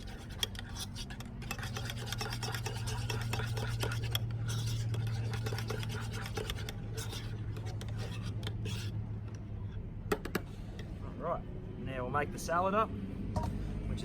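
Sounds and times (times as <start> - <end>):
utensil scraping a bowl: 0.0 - 9.0
steady low hum: 0.0 - 14.0.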